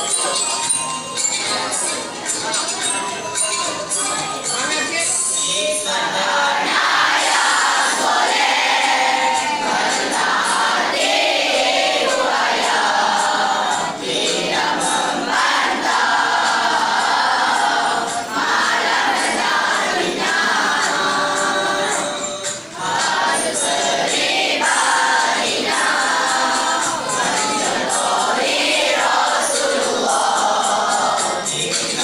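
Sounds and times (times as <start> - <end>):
backing music: 0.0 - 32.0
group of voices singing: 5.4 - 32.0.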